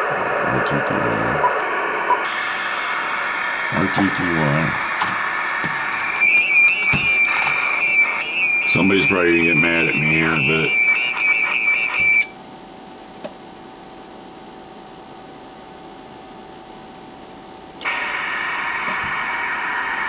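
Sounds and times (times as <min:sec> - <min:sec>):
steady radio tone: 0:00.0 - 0:12.3, 0:17.8 - 0:20.0
radio band hiss with faint tones: 0:00.0 - 0:12.4, 0:17.8 - 0:20.0.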